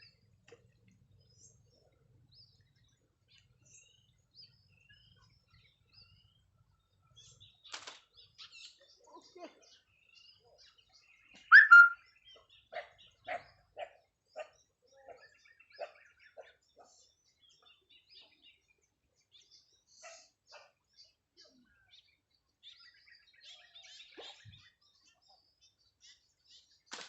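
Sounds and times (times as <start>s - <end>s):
faint bird chirps: 0.0s - 26.9s
bird calling short notes: 11.5s - 12.0s
bird squawk: 11.5s - 12.0s.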